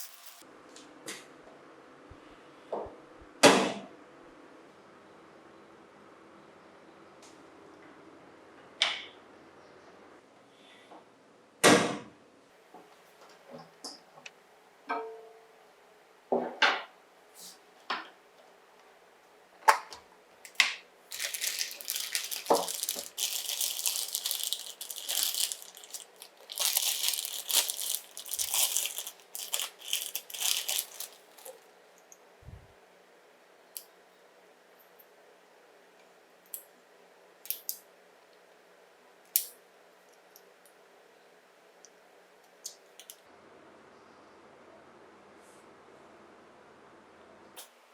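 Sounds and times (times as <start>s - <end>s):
wrapping crinkling and tearing: 20.5s - 31.7s.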